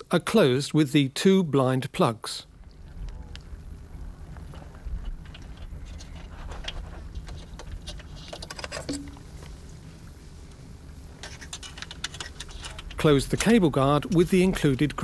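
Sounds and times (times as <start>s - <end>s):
steady low rumble: 2.4s - 8.2s, 8.8s - 15.0s.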